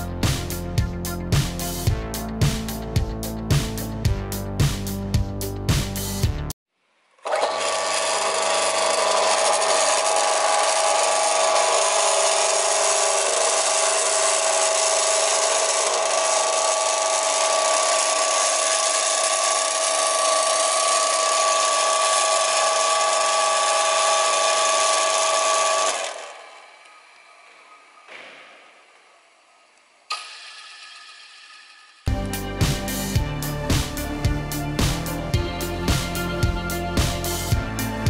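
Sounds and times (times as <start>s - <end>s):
band saw whining: 7.2s - 28.0s.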